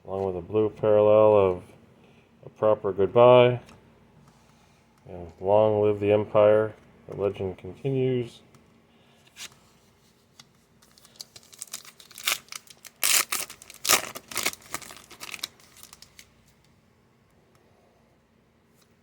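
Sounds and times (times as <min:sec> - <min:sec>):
wrapper tearing and crinkling: 0:10.8 - 0:16.3.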